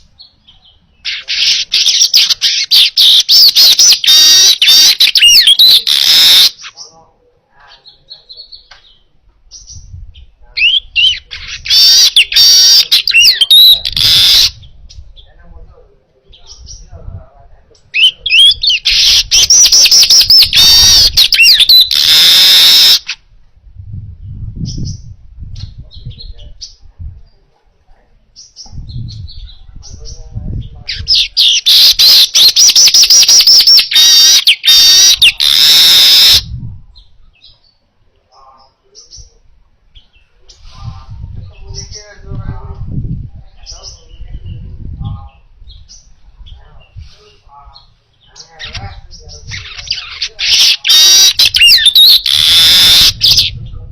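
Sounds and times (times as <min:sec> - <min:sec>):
harsh buzzy bird trills: 0:00.0 - 0:06.9, 0:10.6 - 0:14.8, 0:18.0 - 0:23.2, 0:30.9 - 0:36.6, 0:48.4 - 0:53.7
bird singing: 0:00.0 - 0:07.1, 0:07.7 - 0:15.4, 0:17.8 - 0:23.2, 0:28.3 - 0:40.6, 0:47.7 - 0:53.8.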